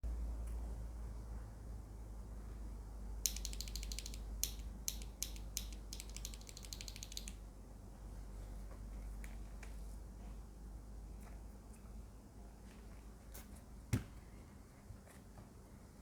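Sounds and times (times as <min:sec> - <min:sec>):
typing on mechanical keyboard: 0:03.3 - 0:07.4.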